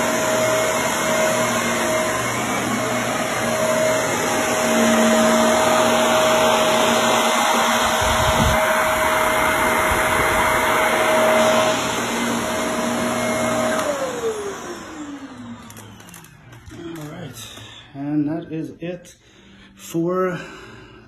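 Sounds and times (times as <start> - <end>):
motor winding down: 0.0 - 17.6
vacuum cleaner motor whine: 0.0 - 17.8.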